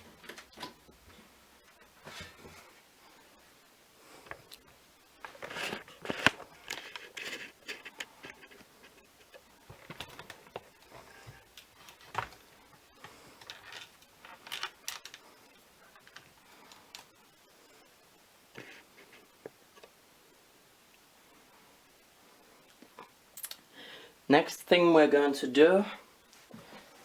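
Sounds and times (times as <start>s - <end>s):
hands handling computer parts: 0.0s - 2.8s, 4.2s - 15.2s.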